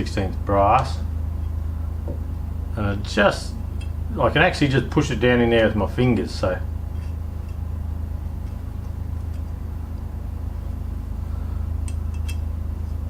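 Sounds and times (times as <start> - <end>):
low hum: 0.0 - 13.0
metal parts clicking: 11.8 - 12.4.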